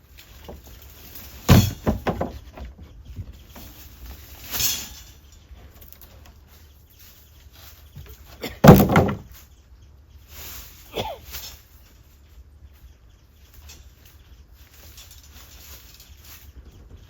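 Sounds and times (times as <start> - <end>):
hard objects knocking: 8.6 - 9.3.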